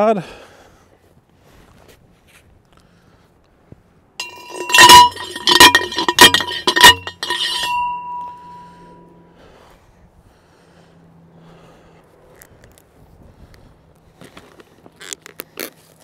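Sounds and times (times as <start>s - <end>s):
hammer striking metal stake: 4.2s - 9.0s
metal rod ringing: 4.2s - 9.2s.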